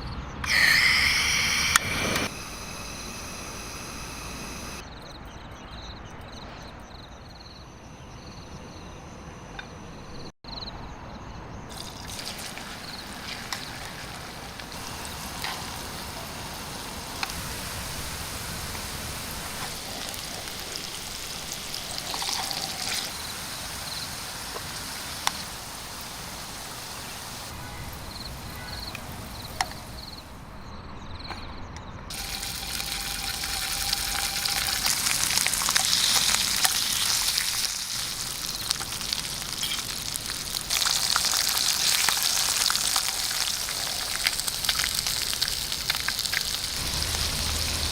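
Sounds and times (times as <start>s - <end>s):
water trickling and pouring: 11.7s - 29.6s, 32.1s - 47.9s.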